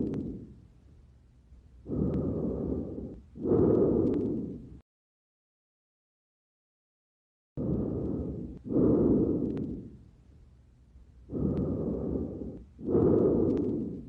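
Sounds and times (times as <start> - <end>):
breath sounds through stethoscope: 0.0 - 0.6, 1.8 - 4.8, 7.6 - 10.1, 11.2 - 14.0.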